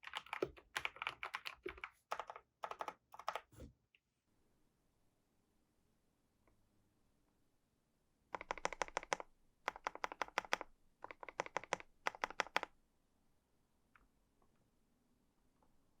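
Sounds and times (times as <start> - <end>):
mechanical keyboard key clicks: 8.4 - 12.7.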